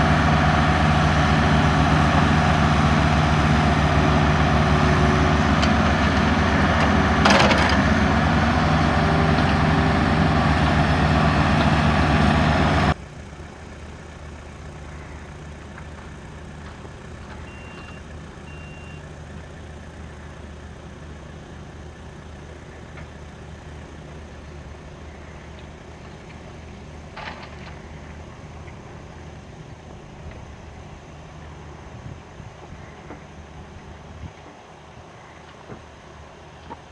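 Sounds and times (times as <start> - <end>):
short high beeps: 17.5 - 19.0.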